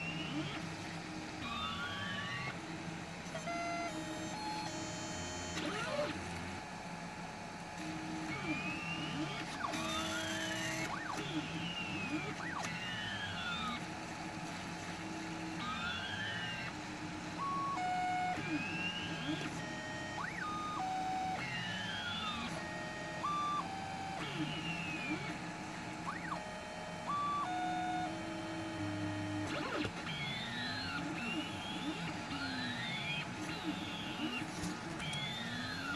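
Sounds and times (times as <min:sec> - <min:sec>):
motors whining: 0:00.0 - 0:35.9
stepper motor tones: 0:07.8 - 0:35.9.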